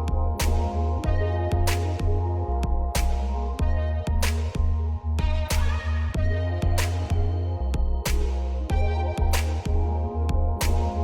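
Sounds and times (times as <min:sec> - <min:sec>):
electronic music with heavy bass: 0:00.0 - 0:11.0.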